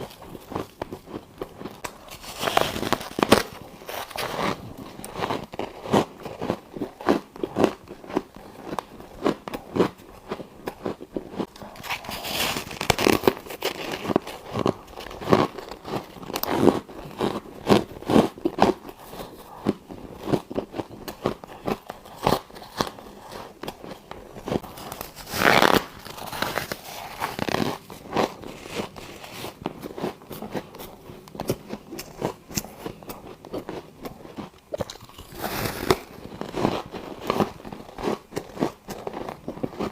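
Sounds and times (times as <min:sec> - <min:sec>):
chewing ice crunches: 0:00.0 - 0:39.9.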